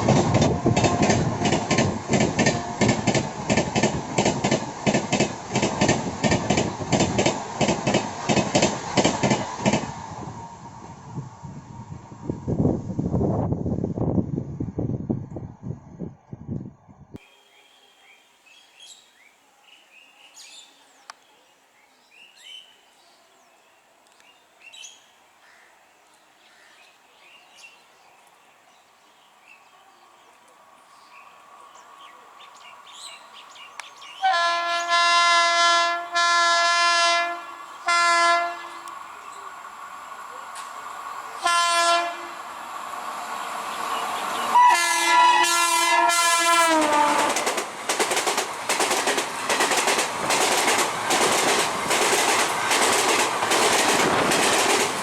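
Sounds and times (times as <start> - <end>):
locomotive multi-tone horn: 0.0 - 1.8, 2.4 - 3.1, 34.2 - 38.9, 41.4 - 42.5, 44.3 - 47.5
clatter of passing train: 0.0 - 14.2, 32.6 - 55.0
approaching train rumble: 0.0 - 17.2, 29.3 - 55.0
faint bird chirps: 17.2 - 34.2.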